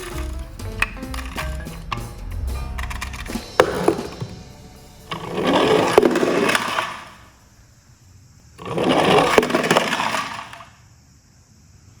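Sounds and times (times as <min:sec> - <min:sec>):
plastic toy vehicles rattling: 0:08.6 - 0:10.7.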